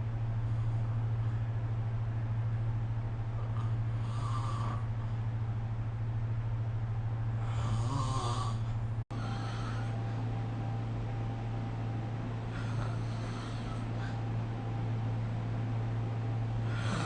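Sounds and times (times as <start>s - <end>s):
steady low hum: 0.0s - 17.0s
person snoring: 3.4s - 4.9s, 7.4s - 10.0s, 12.5s - 14.2s, 16.6s - 17.0s.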